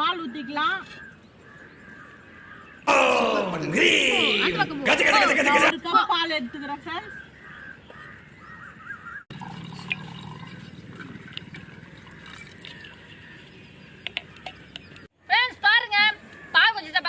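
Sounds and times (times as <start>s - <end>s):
milk pouring into pot: 9.3s - 13.0s.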